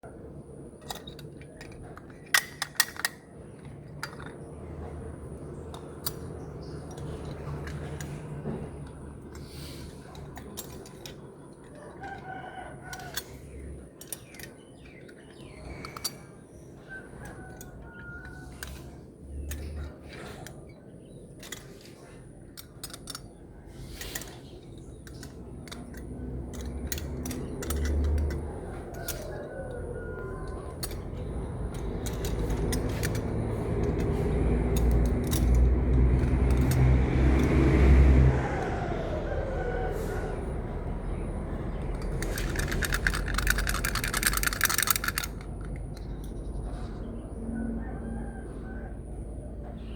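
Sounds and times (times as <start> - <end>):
rooster crowing: 11.7 - 13.5, 16.9 - 18.9, 27.8 - 31.2, 36.8 - 41.0, 47.4 - 49.4
plastic beads clicking: 22.6 - 37.7, 41.8 - 46.4.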